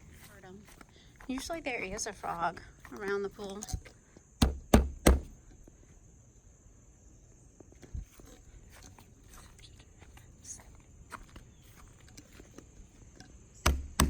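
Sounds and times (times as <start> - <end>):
footsteps walking outdoors: 0.0 - 5.8, 7.6 - 13.2
heavy thump: 4.4 - 5.4.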